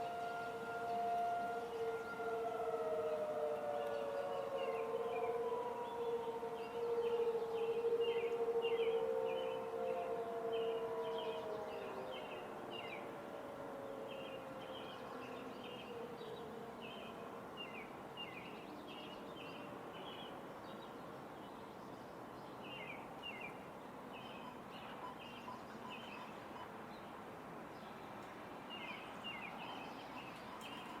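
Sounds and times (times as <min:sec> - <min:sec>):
warning siren winding down: 0:00.0 - 0:16.5
background noise: 0:00.0 - 0:31.0.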